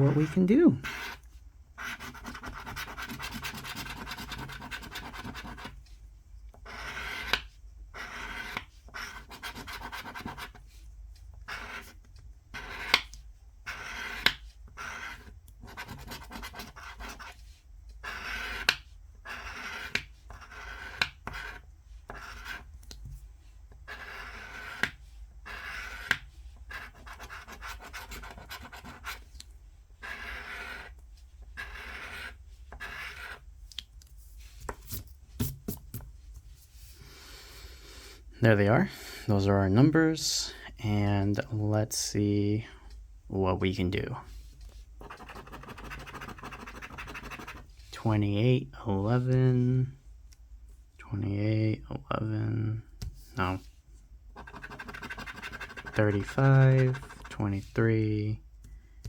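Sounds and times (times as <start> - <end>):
scratching lottery ticket: 0.0 - 1.2, 1.8 - 5.9, 6.6 - 22.8, 23.7 - 29.4, 30.0 - 33.5, 45.0 - 47.7, 54.4 - 58.2.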